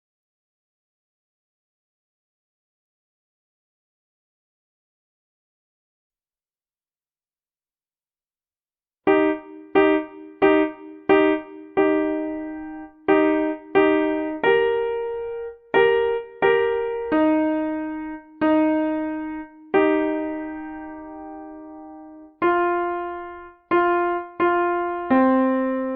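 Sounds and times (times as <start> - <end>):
piano melody: 9.1 - 25.9.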